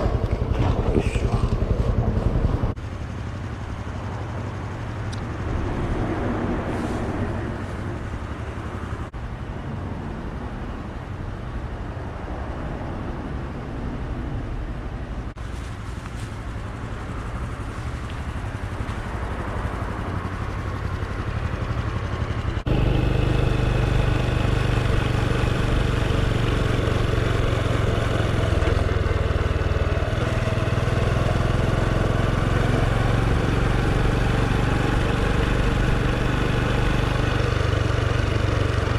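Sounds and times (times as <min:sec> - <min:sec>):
small motorcycle engine running: 0:00.0 - 0:06.2, 0:15.9 - 0:38.9
road and wind noise: 0:00.0 - 0:38.9.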